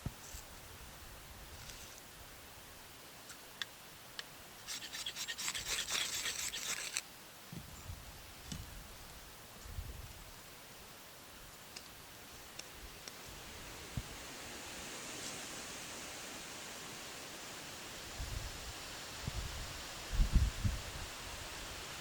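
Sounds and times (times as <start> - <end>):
scratchy scraping and rustling: 4.6 - 7.0.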